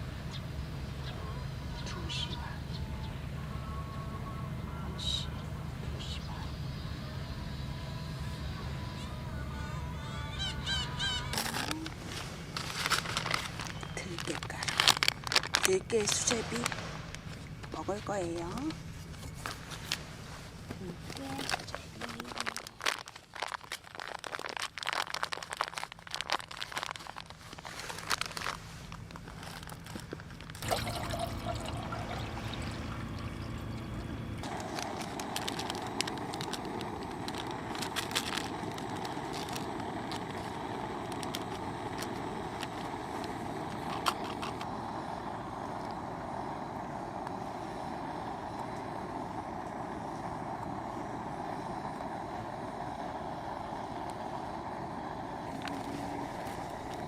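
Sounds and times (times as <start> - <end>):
gas stove burner hissing: 5.3 - 22.4, 31.1 - 57.0.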